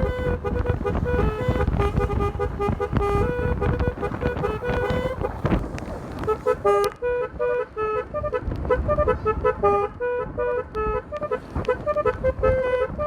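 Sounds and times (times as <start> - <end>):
motorcycle musical horn toots: 0.0 - 5.6, 6.2 - 13.0.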